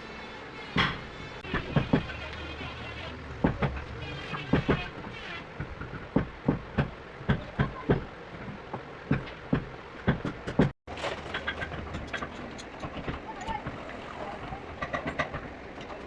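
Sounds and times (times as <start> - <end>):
knocks striking wood: 0.8 - 2.4, 3.4 - 10.8.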